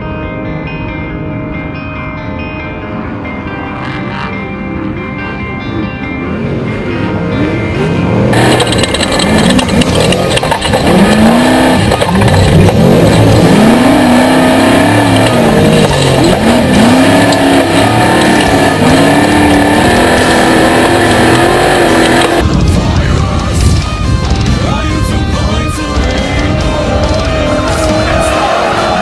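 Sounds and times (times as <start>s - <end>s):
race vehicle engine revving: 5.7s - 22.6s.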